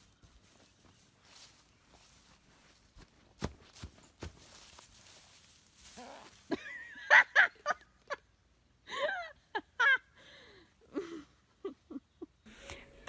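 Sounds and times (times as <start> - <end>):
high-pitched vocal calls: 6.0 - 6.3.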